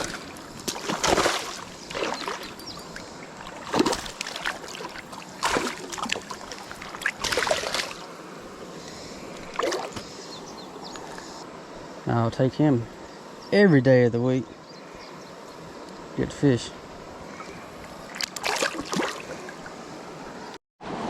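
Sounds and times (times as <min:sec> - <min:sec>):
fish thrashing water splashing: 0:00.0 - 0:02.6, 0:03.4 - 0:08.1, 0:09.4 - 0:10.0, 0:18.1 - 0:19.3.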